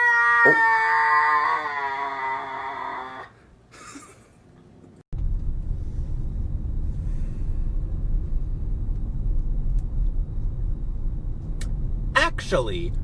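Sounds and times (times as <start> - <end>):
low rumble: 5.1 - 13.0.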